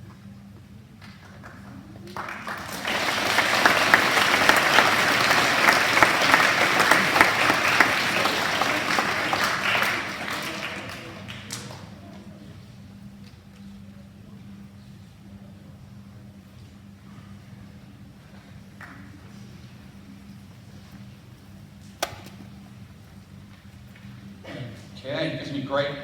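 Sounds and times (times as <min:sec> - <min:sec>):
audience applauding: 0:01.2 - 0:12.1.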